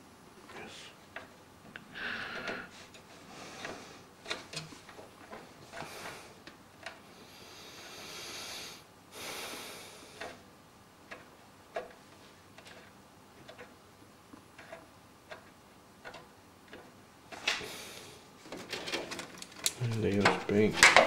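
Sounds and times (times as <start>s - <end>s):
cables and connectors clicking: 18.5s - 21.0s.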